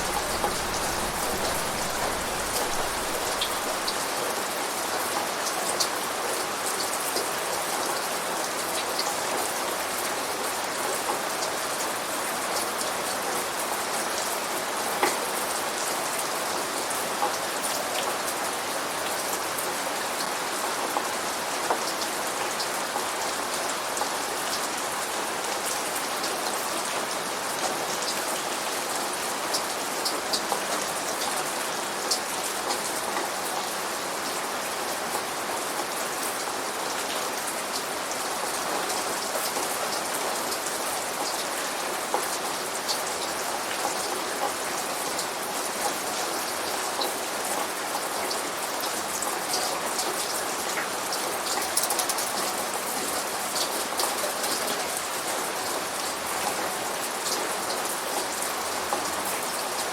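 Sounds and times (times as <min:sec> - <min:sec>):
raindrops pattering: 0:00.0 - 0:04.4, 0:47.2 - 0:59.9
rain falling: 0:00.0 - 0:59.9.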